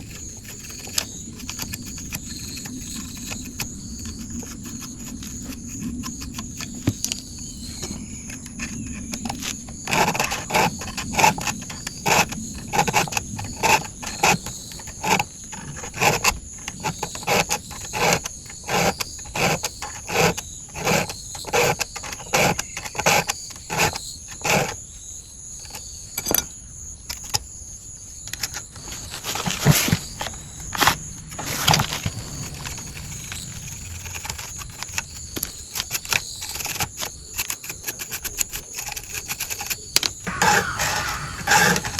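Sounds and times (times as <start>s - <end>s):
file rasping on chainsaw chain: 0.0s - 7.1s, 10.0s - 24.8s, 36.1s - 41.9s.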